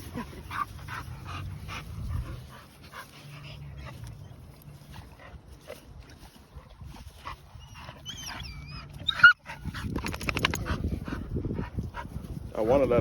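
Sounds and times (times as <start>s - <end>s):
dogs whining: 7.6s - 10.4s.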